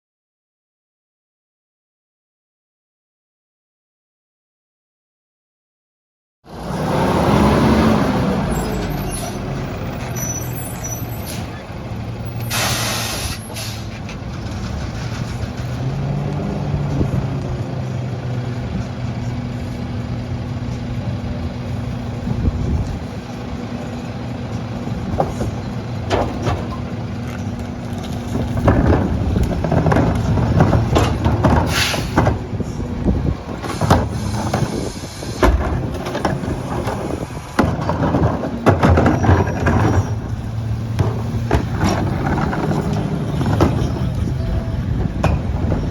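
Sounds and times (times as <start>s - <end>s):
truck engine running: 6.5s - 45.9s
air brake hiss: 12.4s - 14.0s, 31.7s - 32.2s, 33.8s - 35.4s
metal clanks: 23.8s - 32.8s.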